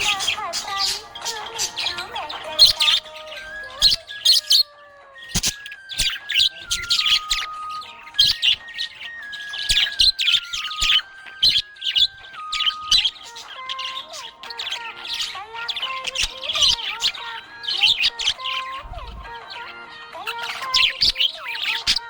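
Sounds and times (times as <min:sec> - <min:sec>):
budgerigar chirping and warbling: 0:00.0 - 0:22.0.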